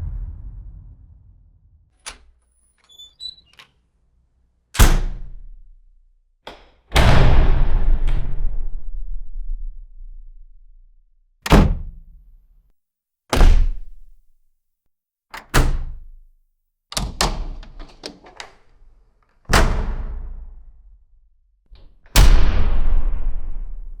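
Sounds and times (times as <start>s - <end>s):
doors shutting with a thud: 11.4s - 12.0s, 13.3s - 13.9s, 15.4s - 16.1s, 19.5s - 20.4s.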